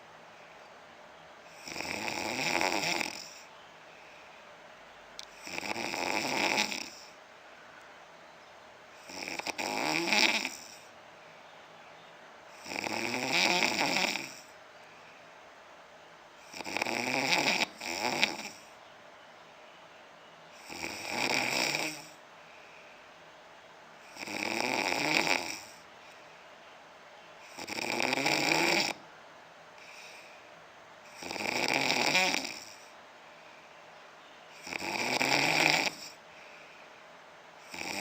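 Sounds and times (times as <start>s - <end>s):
man snoring: 1.5s - 3.5s, 5.3s - 7.2s, 9.0s - 10.9s, 12.5s - 14.6s, 16.4s - 18.7s, 20.6s - 22.2s, 24.0s - 25.8s, 27.4s - 29.0s, 31.1s - 32.9s, 34.5s - 36.2s, 37.6s - 38.0s.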